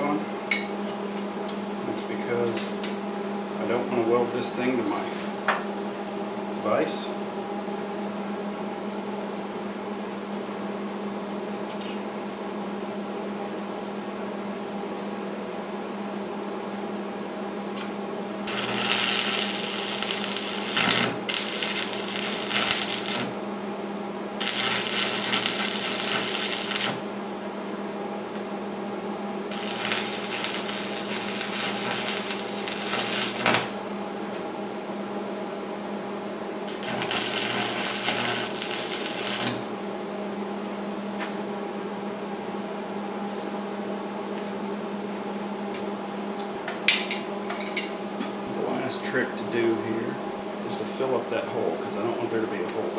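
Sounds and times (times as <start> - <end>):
arc welder humming: 17.8 - 28.4, 29.4 - 34.5, 36.6 - 40.3
crackling hissing welding arc: 18.5 - 23.4, 24.4 - 27.1, 29.5 - 33.9, 36.7 - 39.8.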